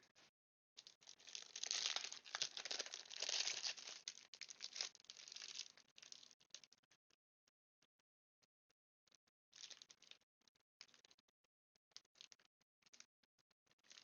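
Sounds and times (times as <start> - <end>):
plastic packaging crinkling: 1.1 - 6.2.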